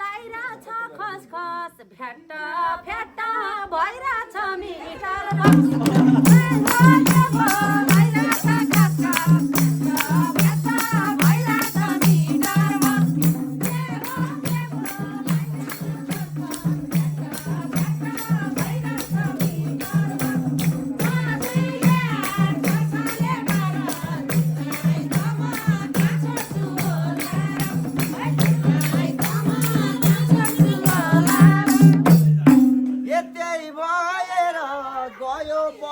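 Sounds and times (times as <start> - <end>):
fast drum rhythm: 5.3 - 33.3
jingling rattle percussion: 5.5 - 32.9.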